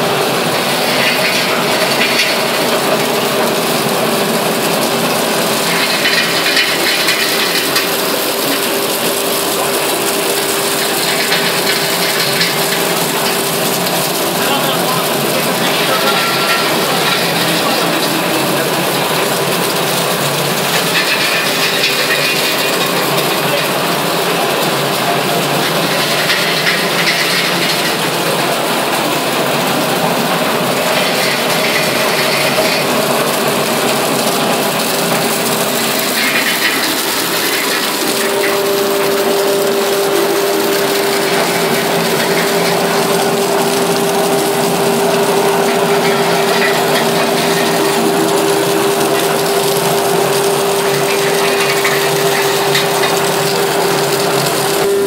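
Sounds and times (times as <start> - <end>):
ice machine clatter: 0.0 - 55.0.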